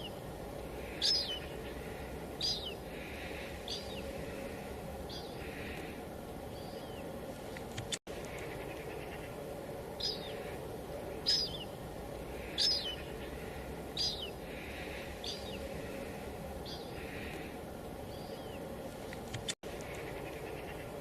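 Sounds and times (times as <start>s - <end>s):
light drizzle hiss: 0.0s - 21.0s
bird chirping: 0.8s - 5.9s, 6.5s - 7.2s, 10.0s - 18.7s.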